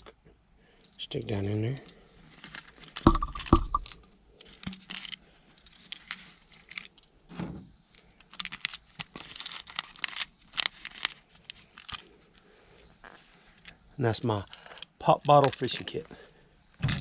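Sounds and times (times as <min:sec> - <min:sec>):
louder knocks: 0:03.1 - 0:03.9
small items clicking in plastic bottle: 0:08.2 - 0:12.1, 0:14.5 - 0:15.9.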